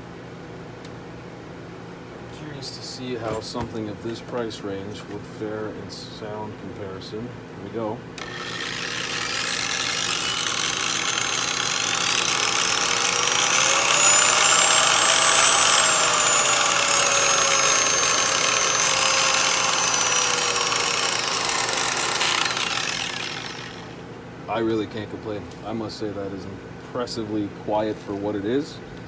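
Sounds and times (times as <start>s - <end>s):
bearing noise: 8.2s - 23.9s
polisher motor whine: 8.2s - 24.0s.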